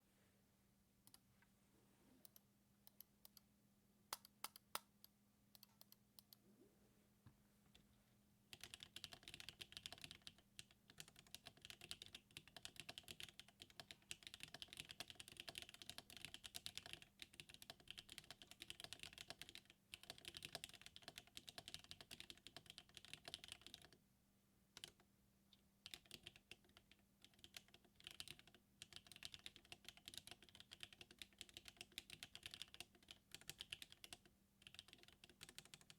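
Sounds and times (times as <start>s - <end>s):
typing on mechanical keyboard: 8.5s - 24.0s, 24.8s - 25.0s, 25.8s - 35.9s.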